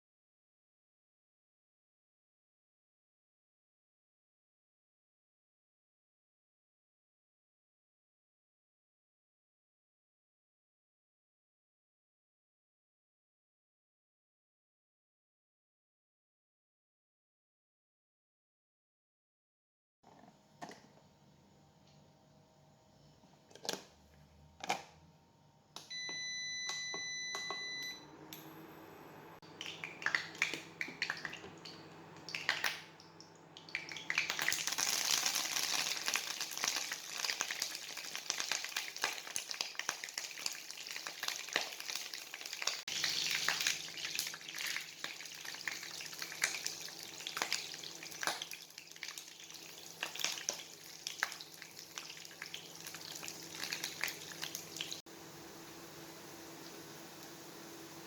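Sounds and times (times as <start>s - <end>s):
long electronic beep: 25.9s - 28.1s
food sizzling in hot oil: 33.7s - 58.0s.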